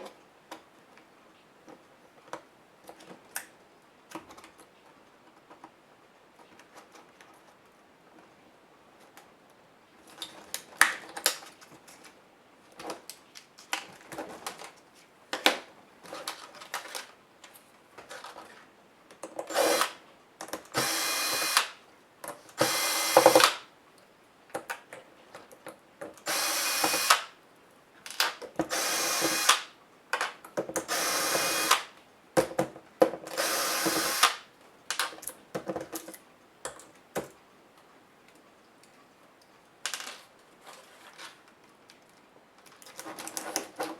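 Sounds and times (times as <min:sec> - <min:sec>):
electric screwdriver driving screws: 0:19.5 - 0:20.0, 0:20.8 - 0:21.8, 0:22.6 - 0:23.6, 0:26.3 - 0:27.3, 0:28.7 - 0:29.7, 0:30.9 - 0:31.9, 0:33.4 - 0:34.4.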